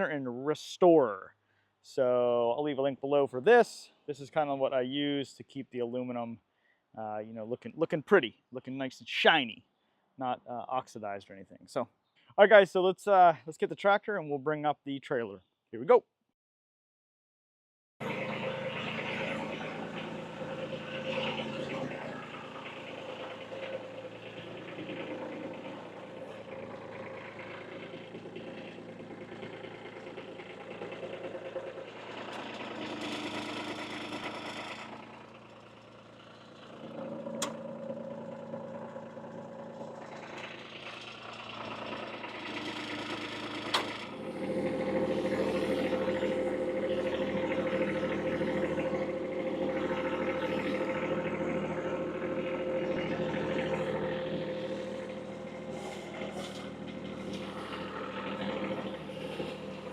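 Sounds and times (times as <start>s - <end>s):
tractor diesel engine running: 18.0s - 59.9s.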